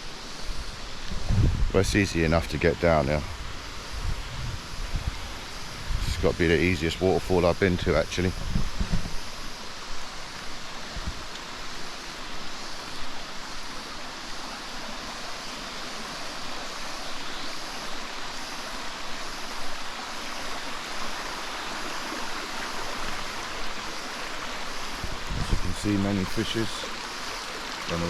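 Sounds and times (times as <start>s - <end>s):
waterfall pouring over rocks: 9.1s - 28.0s.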